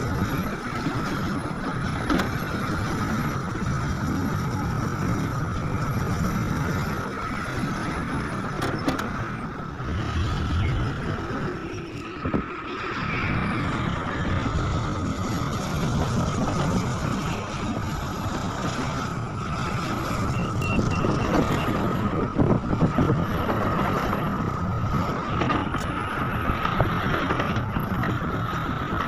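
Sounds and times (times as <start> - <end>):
heavy diesel machinery rumbling: 0.0 - 29.0
short beeps: 20.3 - 21.8.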